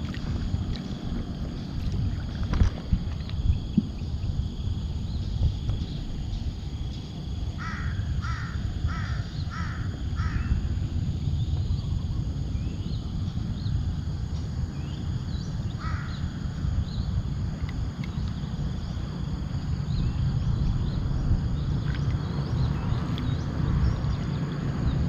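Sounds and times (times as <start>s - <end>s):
steady low rumble: 0.0s - 25.0s
small birds twittering: 5.0s - 25.0s.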